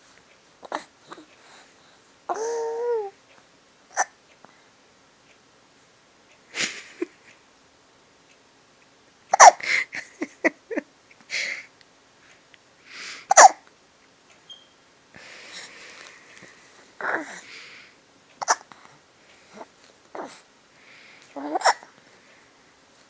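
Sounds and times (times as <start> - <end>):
hiccups: 3.9 - 4.2, 9.3 - 9.6, 13.3 - 13.6, 18.4 - 18.7, 21.4 - 21.9
breathy sounds: 15.2 - 18.0.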